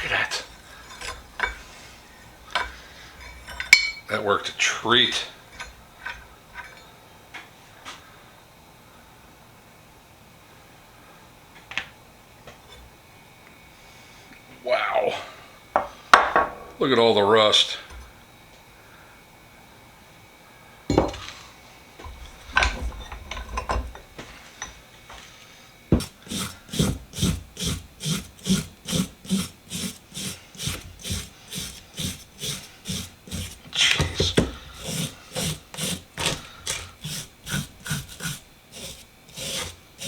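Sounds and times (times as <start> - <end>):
hand tool scraping a vise: 0.0 - 6.9, 25.9 - 40.0.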